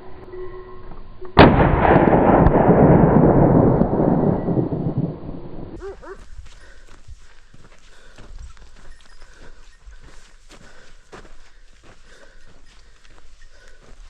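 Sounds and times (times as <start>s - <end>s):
gunshot with rumbling echo: 1.4s - 5.8s.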